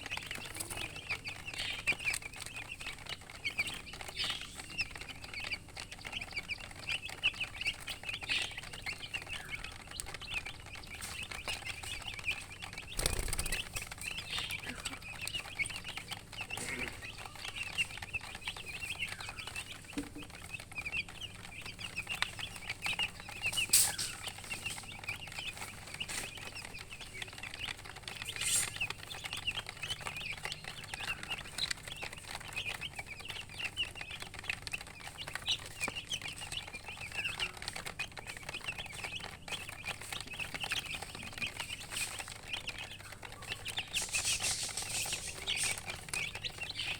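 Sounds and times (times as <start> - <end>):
baby chicks peeping: 0.0 - 46.9.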